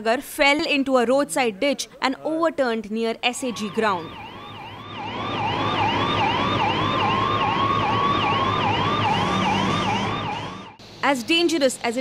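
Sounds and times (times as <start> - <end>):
emergency siren yelping: 3.4 - 10.8.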